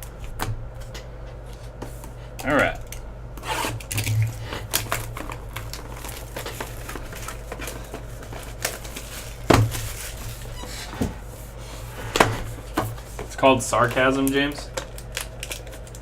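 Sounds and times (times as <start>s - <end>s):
steady low hum: 0.0s - 16.0s
cards in plastic sleeves rustling: 3.6s - 16.0s.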